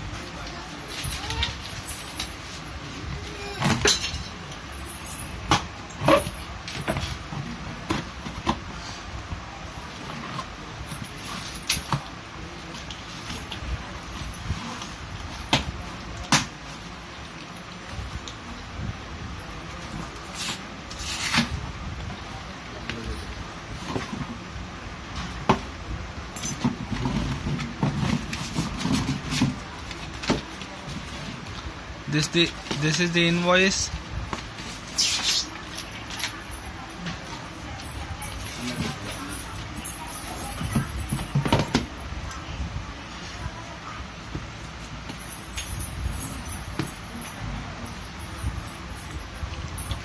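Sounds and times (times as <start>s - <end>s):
low background hum: 0.0s - 50.0s
cardboard and plastic rustling: 26.6s - 31.7s.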